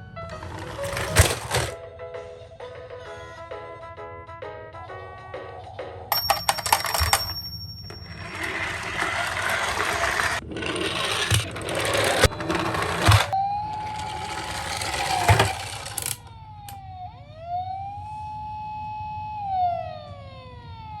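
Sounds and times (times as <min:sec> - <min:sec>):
toy cars rolling down a slope: 0:00.2 - 0:01.8, 0:06.1 - 0:16.2
toy siren wailing: 0:08.1 - 0:21.0.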